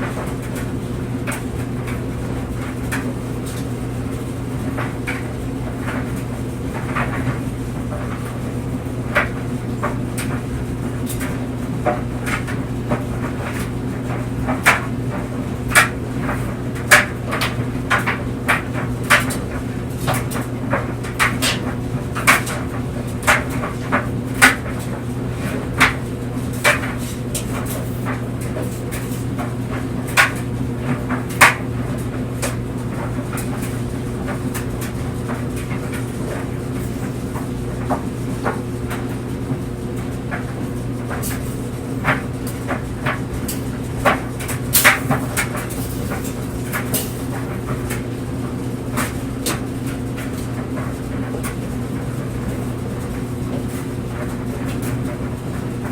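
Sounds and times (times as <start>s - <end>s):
clothes dryer humming: 0.0s - 55.9s.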